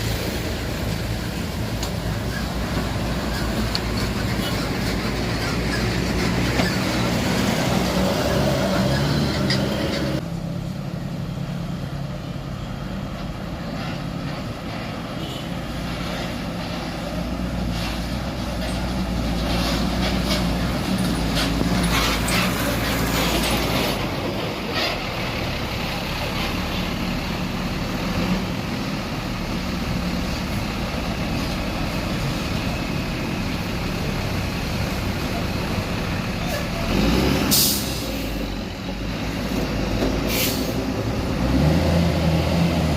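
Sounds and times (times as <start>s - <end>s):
bus diesel engines: 0.0s - 42.9s
road traffic: 0.0s - 42.9s.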